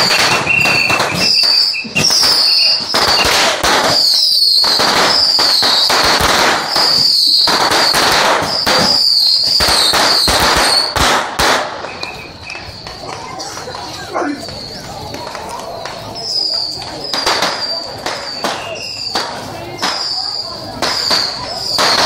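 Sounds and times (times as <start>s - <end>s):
firecrackers crackling: 0.0s - 22.0s
high wavering whistle tone: 11.8s - 13.3s, 14.4s - 22.0s.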